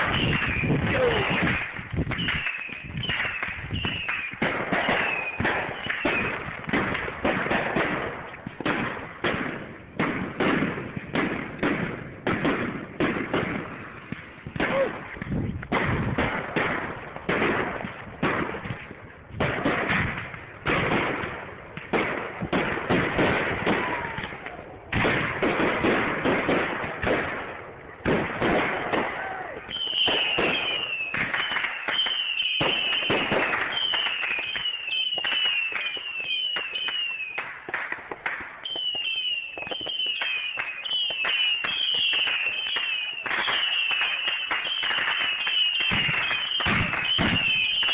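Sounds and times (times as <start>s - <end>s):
falling firework whistles: 0.0s - 6.5s, 29.3s - 37.6s, 38.6s - 47.9s
fireworks bangs and crackles: 0.0s - 47.9s.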